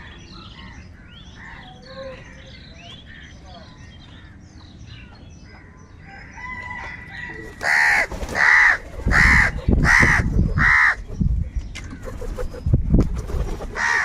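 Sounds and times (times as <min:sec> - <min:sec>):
small birds chirping: 0:00.0 - 0:14.0
crow cawing: 0:07.6 - 0:11.0, 0:13.8 - 0:14.0.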